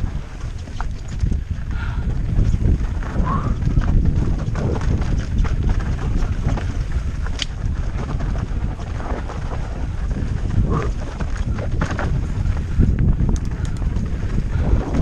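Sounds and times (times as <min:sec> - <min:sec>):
bike rattling over rocks: 0:00.0 - 0:15.0
wind buffeting microphone: 0:00.0 - 0:15.0.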